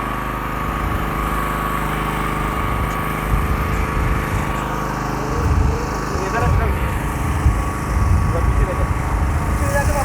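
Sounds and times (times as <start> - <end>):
small engine droning: 0.0 - 10.0
thin high whine: 9.4 - 10.0.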